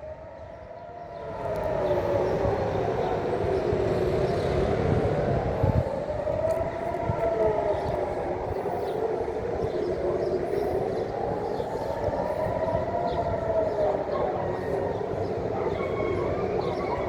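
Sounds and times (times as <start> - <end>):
air raid sirens wailing: 0.0 - 17.0.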